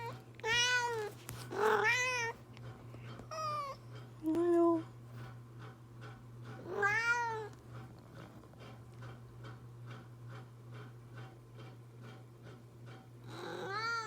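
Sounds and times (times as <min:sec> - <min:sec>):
cat meowing: 0:00.0 - 0:02.4, 0:06.7 - 0:07.5, 0:13.4 - 0:14.0.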